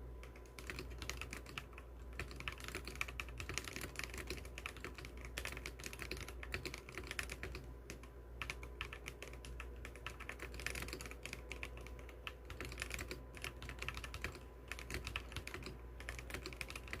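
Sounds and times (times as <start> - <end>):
mechanical keyboard typing: 0.2 - 17.0.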